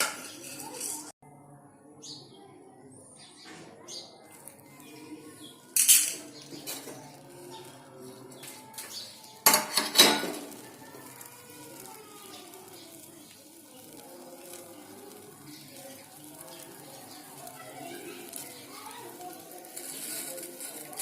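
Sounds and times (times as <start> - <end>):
kitchen utensils clattering: 0.0 - 1.1, 5.8 - 10.7.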